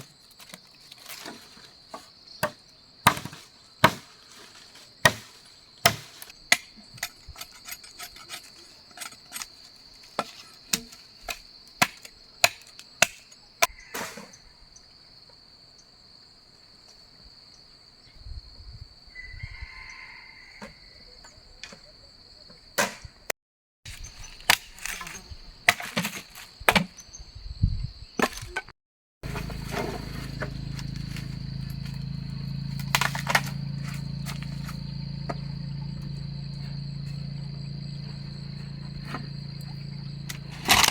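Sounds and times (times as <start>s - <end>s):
tool striking wood: 2.4s - 4.0s, 5.0s - 6.7s, 32.7s - 36.2s
high insect drone: 29.2s - 40.9s
steady low hum: 29.2s - 40.9s.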